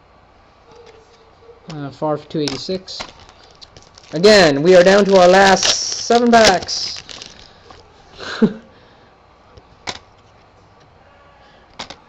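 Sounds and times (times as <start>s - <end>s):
wrapper rustling: 2.5s - 7.9s.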